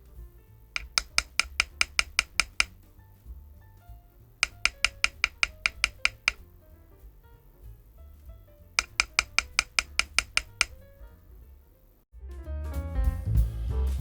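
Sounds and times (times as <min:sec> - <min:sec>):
soft background music: 0:00.0 - 0:14.0
mechanical keyboard keystrokes: 0:00.8 - 0:02.8, 0:04.4 - 0:06.4, 0:08.8 - 0:10.8.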